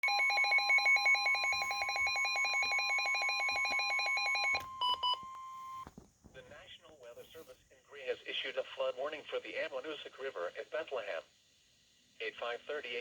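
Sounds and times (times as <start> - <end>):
steady warning alarm tone: 0.0 - 5.8.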